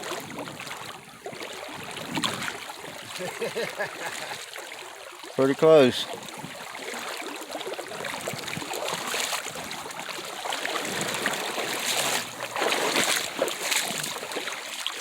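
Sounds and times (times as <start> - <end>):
boots splashing through creek: 0.0 - 15.0
stream running: 0.0 - 15.0.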